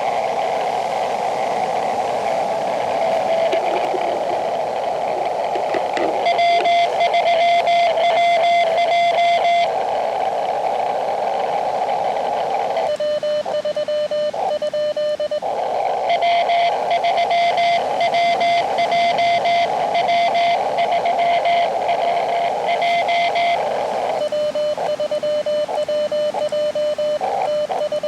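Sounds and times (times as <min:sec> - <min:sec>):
lower-pitched keyed tone: 0:00.0 - 0:09.7
receiver hiss: 0:00.0 - 0:28.0
morse code tone: 0:01.6 - 0:10.0, 0:12.0 - 0:28.0.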